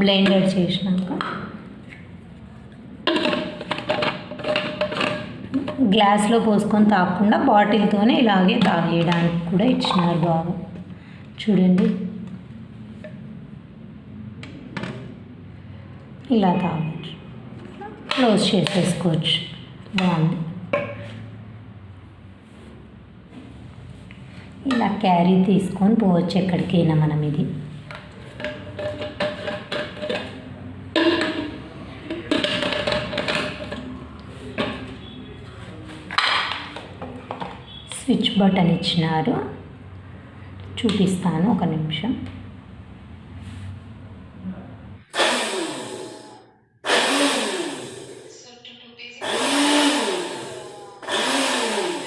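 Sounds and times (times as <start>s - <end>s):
blender motor pulsing: 45.1s - 48.3s, 49.2s - 52.0s.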